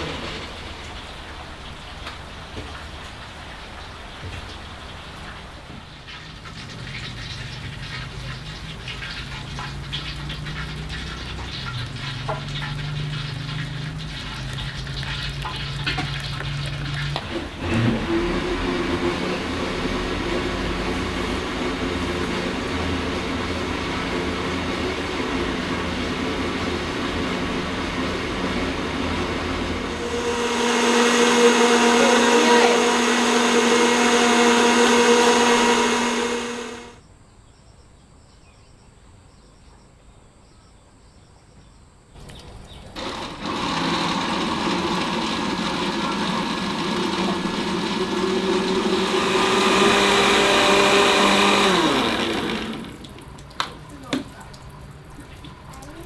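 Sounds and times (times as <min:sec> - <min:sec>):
electric blender running: 0:15.6 - 0:37.0, 0:43.0 - 0:53.2.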